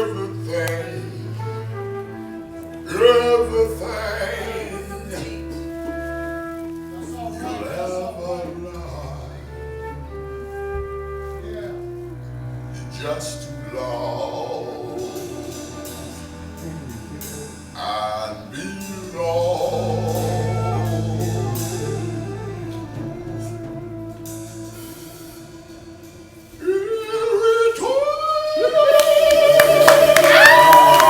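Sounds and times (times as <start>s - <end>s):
instrumental accompaniment: 0.0s - 27.7s, 28.8s - 31.0s
person singing a slow ballad: 17.8s - 31.0s.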